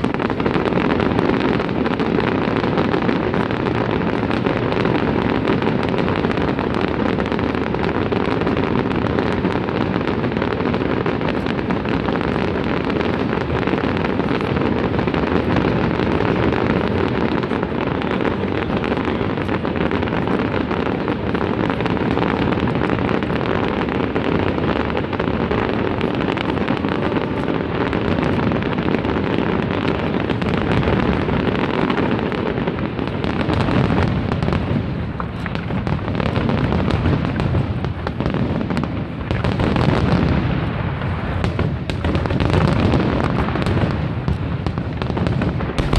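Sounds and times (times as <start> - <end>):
fireworks barrage rumble: 0.0 - 45.9.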